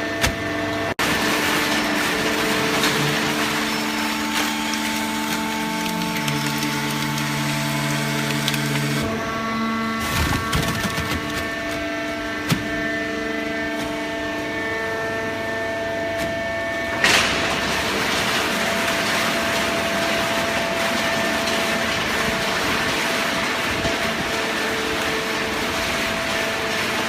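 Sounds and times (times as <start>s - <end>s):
baling press humming: 1.0s - 13.2s.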